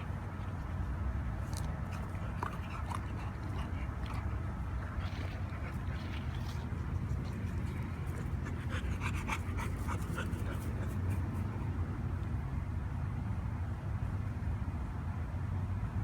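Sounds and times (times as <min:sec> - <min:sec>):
dog panting: 0:00.0 - 0:11.7.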